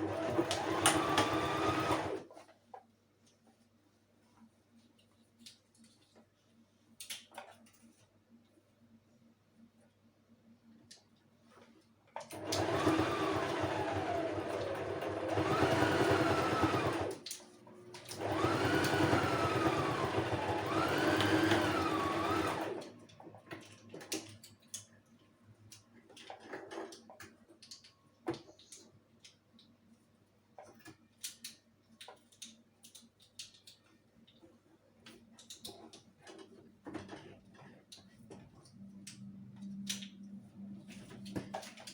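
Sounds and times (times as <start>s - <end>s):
electric sewing machine running: 0.0s - 2.3s, 12.4s - 17.2s, 18.1s - 22.9s.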